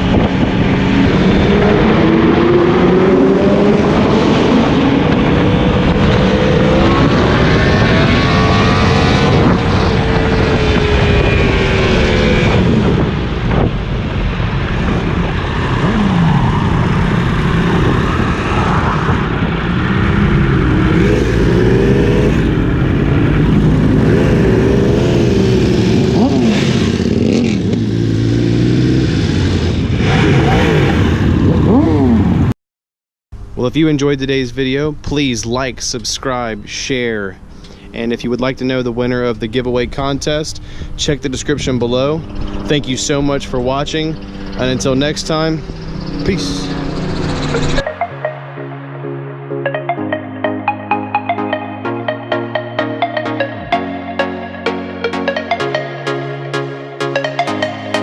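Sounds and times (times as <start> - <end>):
motorcycle engine revving: 0.0 - 32.5, 41.6 - 49.1
wind noise: 0.0 - 32.5.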